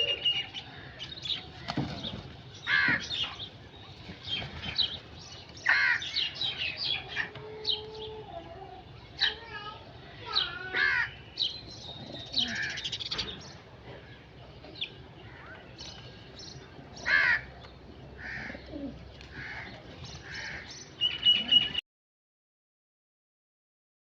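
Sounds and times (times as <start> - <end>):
small birds chirping: 0.0 - 21.8
crows cawing: 0.7 - 1.8, 2.7 - 3.2, 5.7 - 6.3, 10.7 - 11.2, 12.4 - 13.0, 17.0 - 17.5, 18.2 - 20.8.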